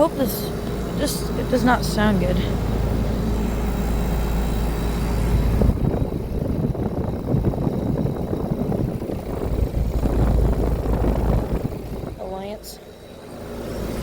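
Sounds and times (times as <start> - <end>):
air conditioner units humming: 0.0 - 14.0
wind rumble on microphone: 2.2 - 12.8.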